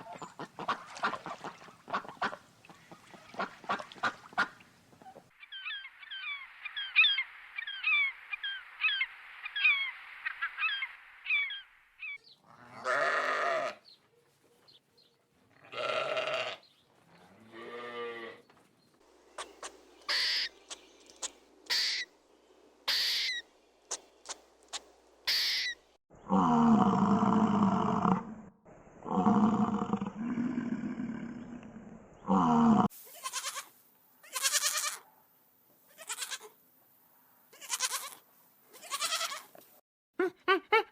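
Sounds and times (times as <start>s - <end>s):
animal chirping: 19.4s - 22.1s, 22.9s - 25.8s.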